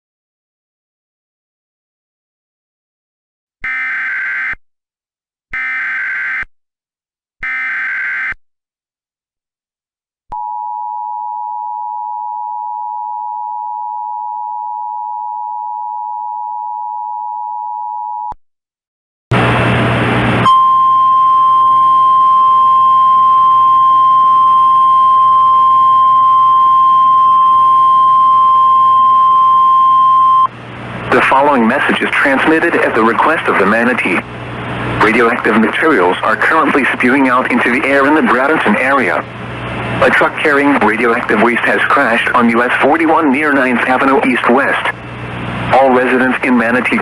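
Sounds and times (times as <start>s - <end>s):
two-tone attention signal: 20.4s - 30.5s
burst of static: 30.7s - 47.0s.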